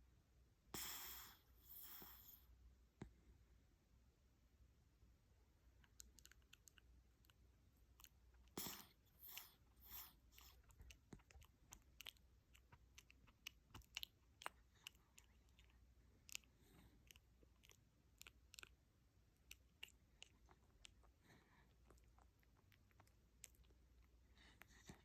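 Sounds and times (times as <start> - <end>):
dog crunching food: 8.0 - 18.8, 19.4 - 23.8.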